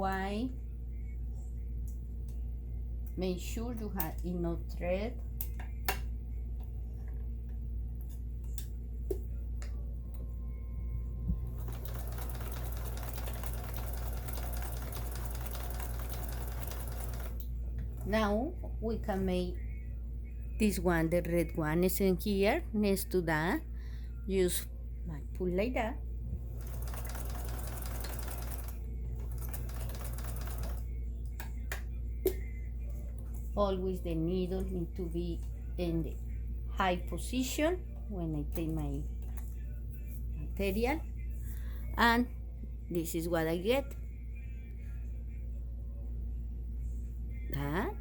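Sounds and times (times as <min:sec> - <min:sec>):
low motor hum: 0:09.3 - 0:12.3
sewing machine stitching: 0:11.6 - 0:17.4, 0:26.6 - 0:30.8.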